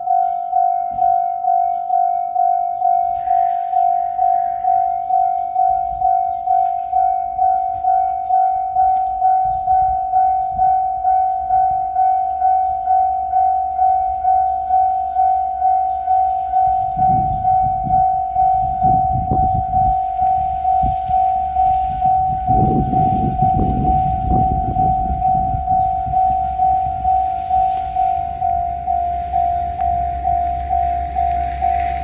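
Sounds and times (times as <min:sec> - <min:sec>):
diesel train rumble: 0:00.0 - 0:32.0
level crossing warning bell: 0:00.0 - 0:32.0
train wheels thumping: 0:20.0 - 0:32.0.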